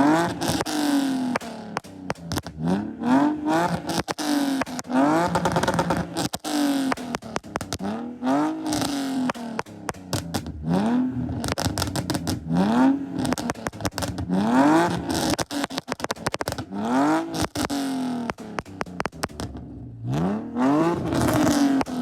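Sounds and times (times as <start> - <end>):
exhaust cracks and pops: 0.0 - 19.9, 20.8 - 22.0
car engine revving: 0.0 - 22.0.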